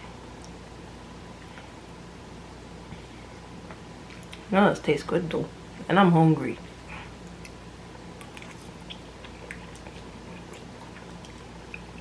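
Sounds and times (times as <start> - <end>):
low steady hum: 0.0 - 12.0
person chewing noodles: 7.1 - 12.0.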